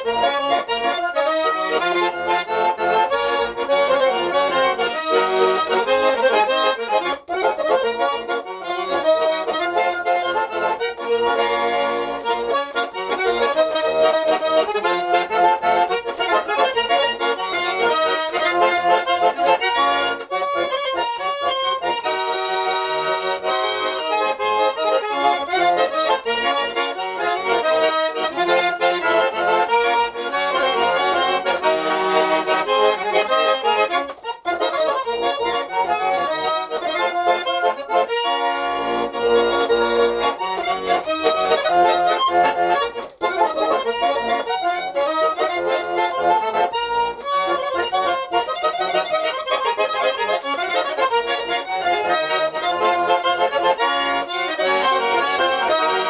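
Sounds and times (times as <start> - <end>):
button accordion melody: 0.0 - 56.0.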